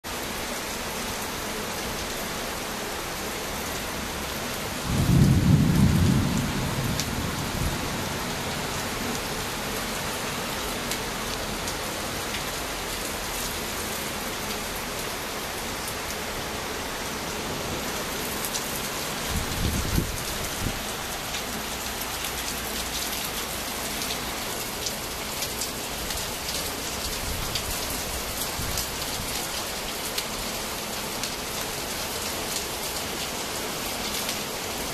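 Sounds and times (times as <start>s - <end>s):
steady rain: 0.0s - 34.9s
raindrops ticking on a surface: 3.4s - 16.4s, 18.0s - 34.9s
thunder rumbling: 4.8s - 8.9s, 19.2s - 20.8s.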